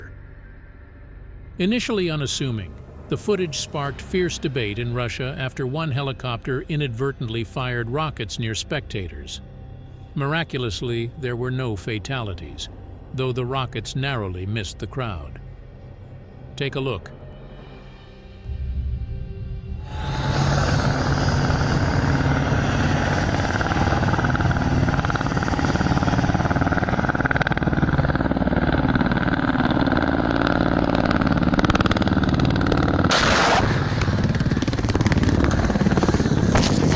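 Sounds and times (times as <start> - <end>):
helicopter rotors and engines: 1.8 - 18.9, 19.6 - 36.9
loud rushing burst: 18.5 - 26.8
sharp cracks: 32.7 - 36.9.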